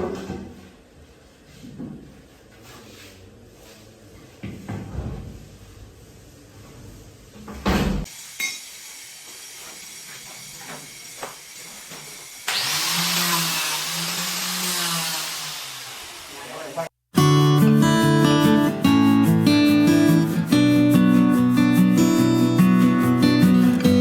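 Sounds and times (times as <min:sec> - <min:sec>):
power tool running: 0:08.1 - 0:16.9.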